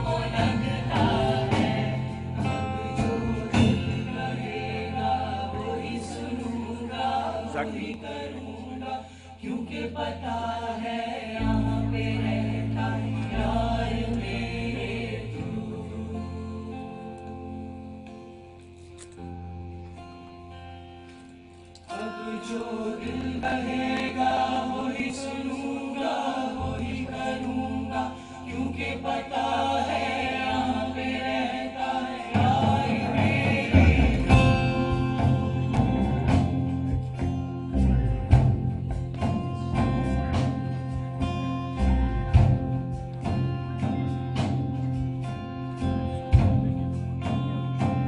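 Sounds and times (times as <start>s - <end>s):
bass and drums: 0.0s - 5.8s, 32.4s - 48.0s
wordless choir-like voices: 0.0s - 20.8s, 21.8s - 48.0s.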